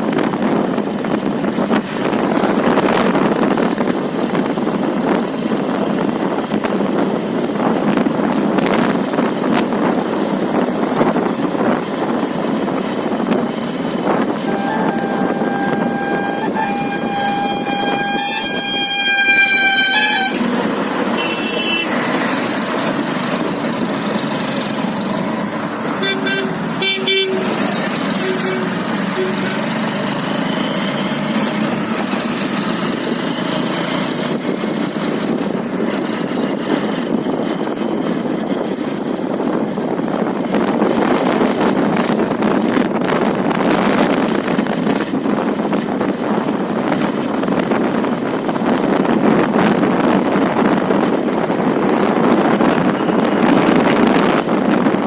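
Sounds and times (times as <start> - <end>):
steady rushing noise: 0.0 - 55.0
horn sounding: 14.4 - 22.1, 25.9 - 29.8.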